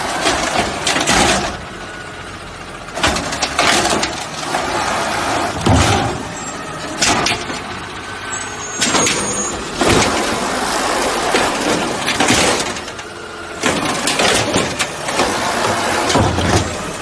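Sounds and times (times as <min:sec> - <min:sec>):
garbage truck running: 0:00.0 - 0:17.0
clanks and bangs: 0:00.2 - 0:01.6, 0:05.5 - 0:07.8, 0:08.4 - 0:10.4, 0:11.2 - 0:13.0, 0:16.0 - 0:17.0.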